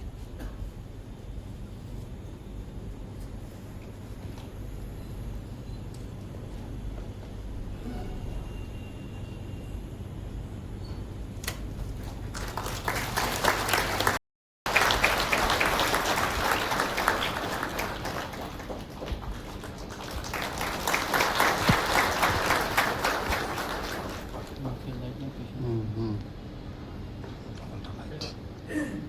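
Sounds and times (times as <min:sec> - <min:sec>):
audience applauding: 0:12.0 - 0:24.8.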